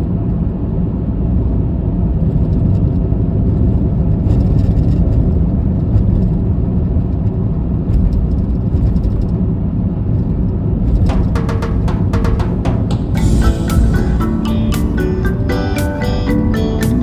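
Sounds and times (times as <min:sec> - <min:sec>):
car road and engine rumble: 0:00.0 - 0:17.0
drum-led music: 0:10.9 - 0:17.0.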